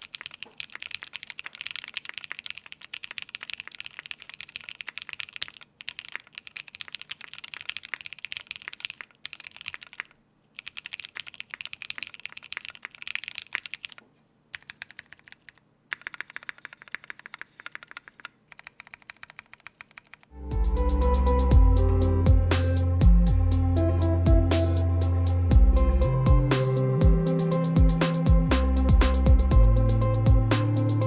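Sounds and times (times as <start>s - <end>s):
typing on mechanical keyboard: 0.0s - 20.3s.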